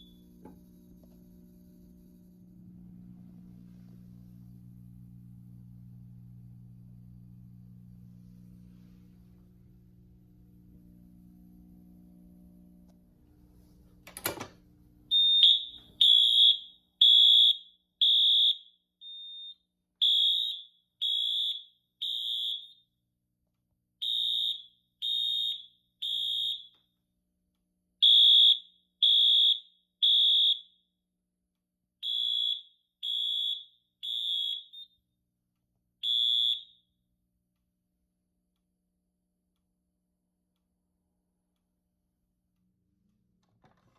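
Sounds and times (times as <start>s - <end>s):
fire alarm tones: 15.1s - 22.9s, 24.0s - 26.9s, 28.0s - 30.8s, 32.0s - 35.0s, 36.0s - 36.9s.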